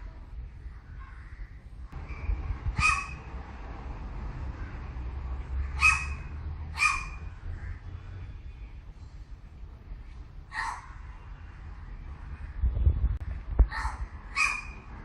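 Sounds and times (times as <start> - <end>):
low rumble: 0.0 - 15.0
crow calling: 0.6 - 3.3, 4.5 - 8.1.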